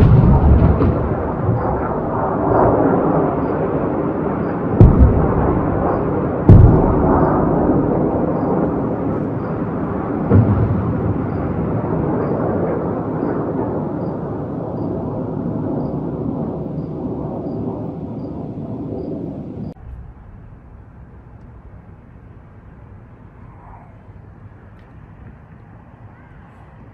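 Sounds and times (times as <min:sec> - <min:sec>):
rolling rumble: 0:00.0 - 0:15.6, 0:17.4 - 0:26.1
distant explosion boom: 0:00.0 - 0:18.0, 0:19.6 - 0:23.0.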